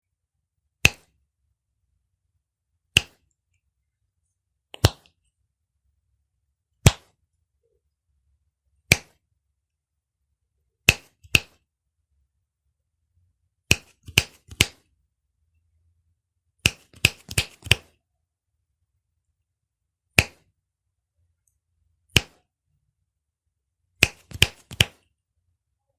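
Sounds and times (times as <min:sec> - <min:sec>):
fingers snapping: 0:16.6 - 0:17.9, 0:24.0 - 0:25.0.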